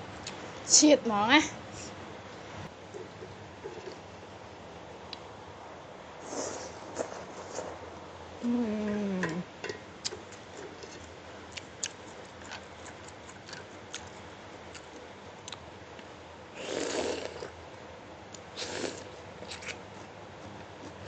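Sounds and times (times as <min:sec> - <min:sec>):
chewing and lip smacks: 0:11.5 - 0:16.0.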